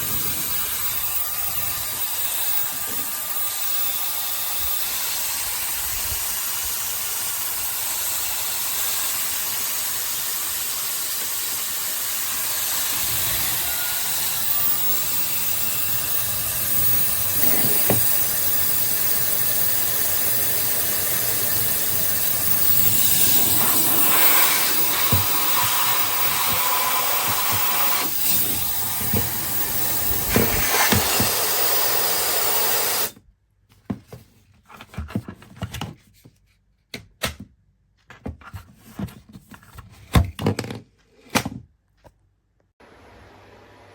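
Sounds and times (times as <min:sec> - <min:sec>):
hair dryer running: 0:00.0 - 0:33.1.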